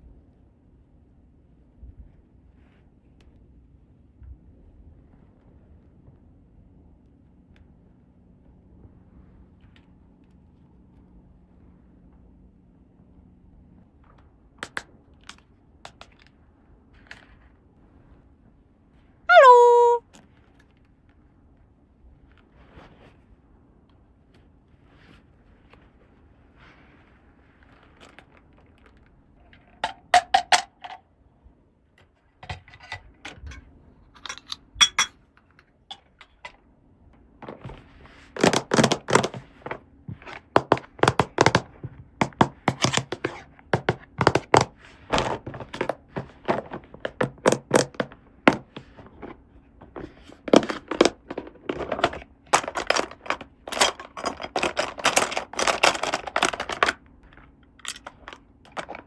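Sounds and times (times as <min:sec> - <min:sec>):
plastic toy pieces clicking: 0:38.4 - 0:39.8, 0:50.5 - 0:57.0.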